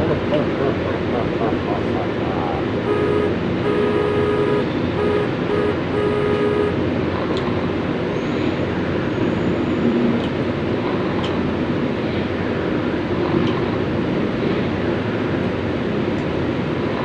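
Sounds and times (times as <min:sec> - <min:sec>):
road traffic noise: 0:00.0 - 0:17.0
horn blasts: 0:02.5 - 0:06.9.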